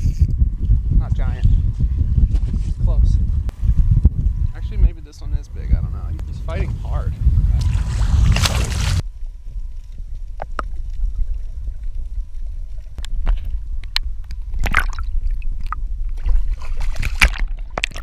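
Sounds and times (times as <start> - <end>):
steady low rumble: 0.4 - 9.0
water sloshing and splashing: 5.7 - 9.0.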